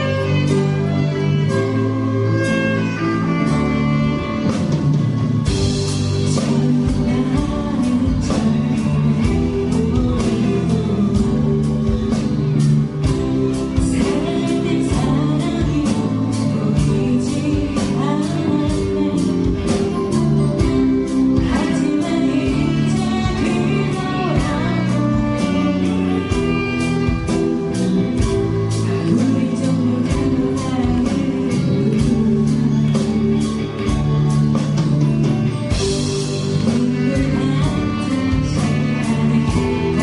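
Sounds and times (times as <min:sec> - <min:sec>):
drums steady beat: 0:00.0 - 0:40.0
guitar chords: 0:00.0 - 0:40.0
live band music: 0:00.0 - 0:40.0.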